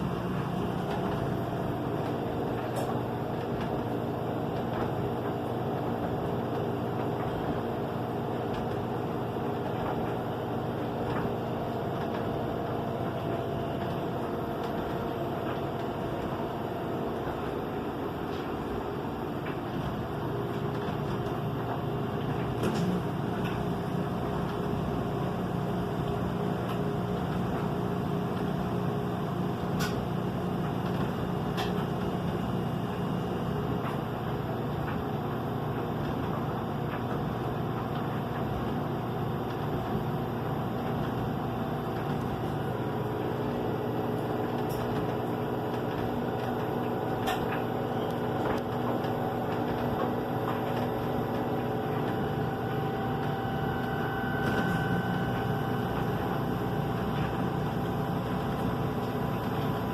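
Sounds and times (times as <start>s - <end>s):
washing machine drum spinning: 0.0s - 59.9s.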